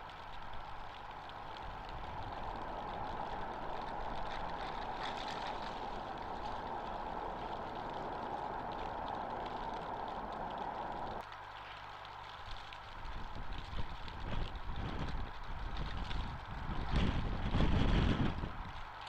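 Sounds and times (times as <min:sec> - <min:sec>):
jet engines rushing: 0:01.1 - 0:11.2.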